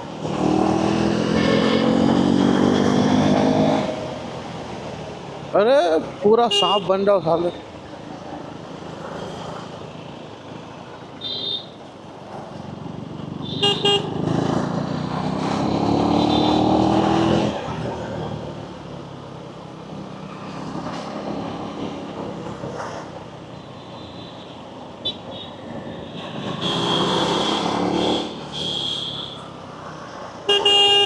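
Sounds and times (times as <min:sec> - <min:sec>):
city traffic: 0:00.0 - 0:31.0
vehicle horn honks: 0:06.5 - 0:06.9, 0:13.5 - 0:14.2, 0:30.5 - 0:31.0
motorcycle engine revving: 0:13.5 - 0:17.7.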